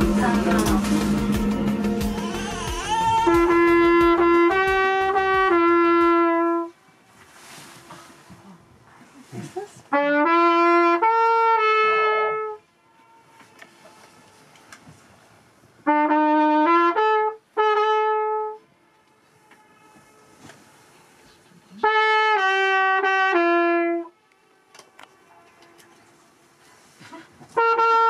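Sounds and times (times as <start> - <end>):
brass horn playing held notes: 0.0 - 6.7.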